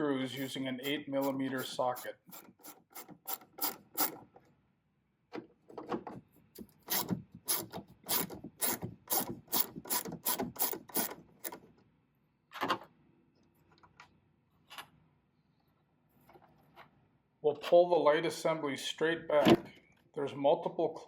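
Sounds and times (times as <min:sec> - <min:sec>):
ratchet clicking: 0:02.0 - 0:04.2, 0:06.9 - 0:11.6.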